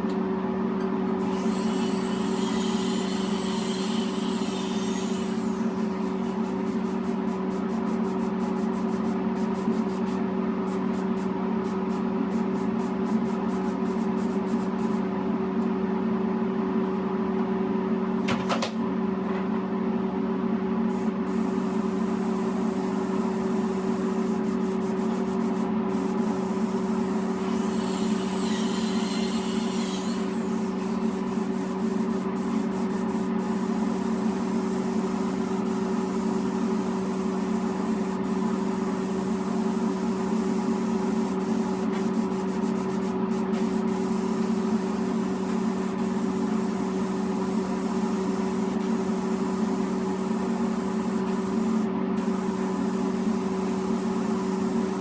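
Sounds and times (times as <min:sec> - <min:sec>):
machine hum with low drone: 0:00.0 - 0:55.0
spray gun spraying coating: 0:01.2 - 0:15.0, 0:20.9 - 0:55.0.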